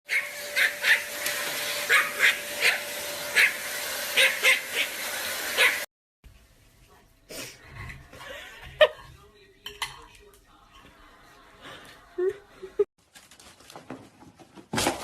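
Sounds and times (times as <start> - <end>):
dog yapping: 0.1 - 1.1, 1.8 - 3.6, 4.2 - 5.0, 5.6 - 5.9.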